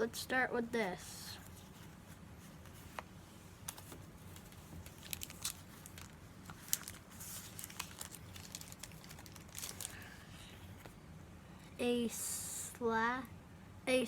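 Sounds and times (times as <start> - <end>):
foil pack crinkling: 3.7 - 10.2.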